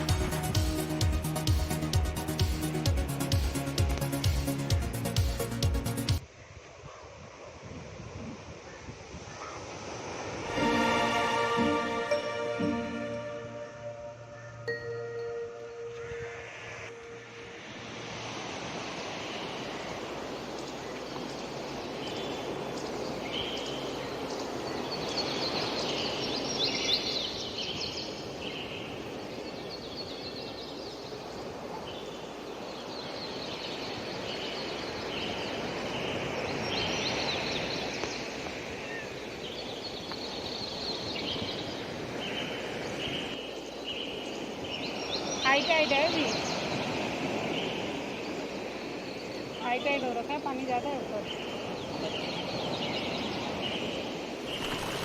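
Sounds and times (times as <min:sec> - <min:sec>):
birds chirping: 0:11.6 - 0:55.0
steady rushing noise: 0:16.1 - 0:22.7.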